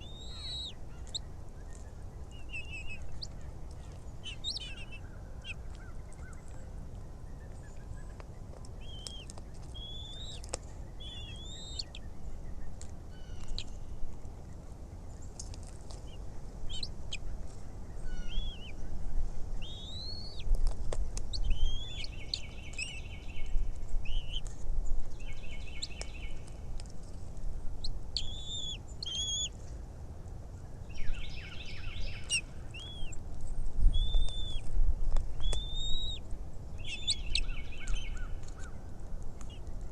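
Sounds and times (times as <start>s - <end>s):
eagles whistling calls: 0.0s - 1.3s, 9.8s - 10.4s, 11.0s - 11.9s, 18.1s - 18.7s, 19.6s - 20.4s, 28.2s - 29.5s, 33.9s - 34.6s, 35.4s - 36.2s.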